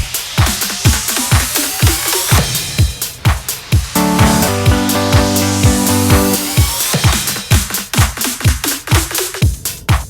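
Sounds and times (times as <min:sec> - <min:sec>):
kick drum: 0:00.0 - 0:10.0
synth chord: 0:04.0 - 0:06.8.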